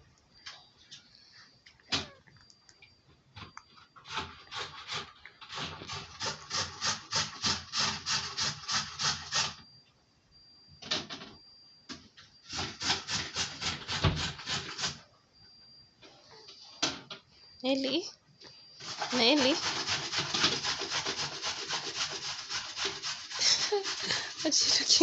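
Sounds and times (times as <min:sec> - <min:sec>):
rhythmic rubbing strokes: 0:04.0 - 0:09.6, 0:18.8 - 0:25.0.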